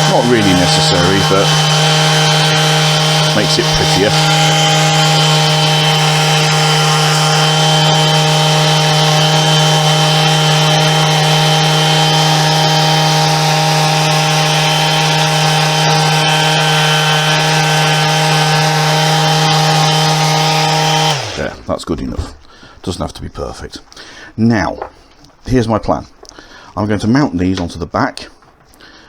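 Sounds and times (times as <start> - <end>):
electric sander sanding wood: 0.0 - 21.7.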